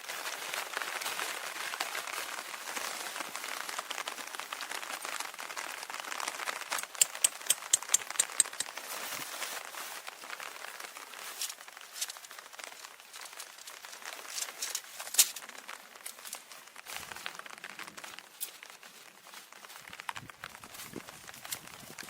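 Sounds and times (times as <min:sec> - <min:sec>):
rustling crinkling handling noise: 0:00.0 - 0:22.0
sharp clicks: 0:06.7 - 0:08.8.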